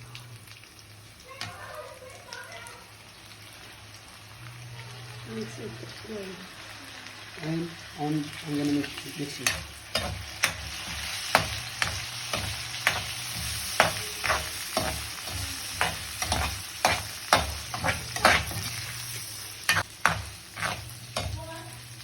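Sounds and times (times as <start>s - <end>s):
chicken sizzling in a pan: 0.0s - 22.0s
utensil knocking and scraping pan: 19.7s - 21.4s.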